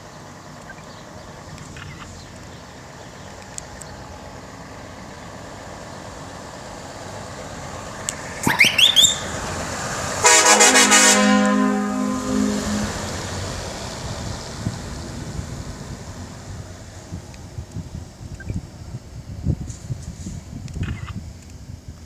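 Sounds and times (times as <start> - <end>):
truck air horn toots: 8.4 - 9.6, 10.2 - 13.7.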